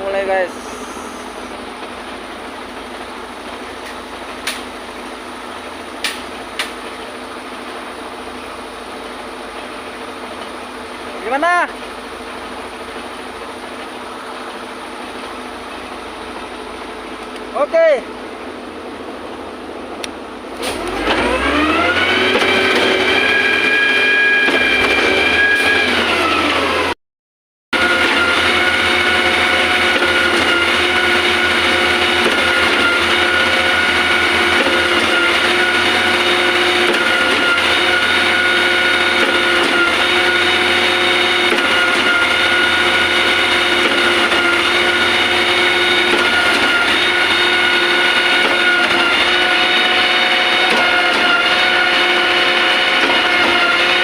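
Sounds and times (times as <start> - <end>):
concrete pump engine drone: 0.0 - 27.0, 27.8 - 54.0.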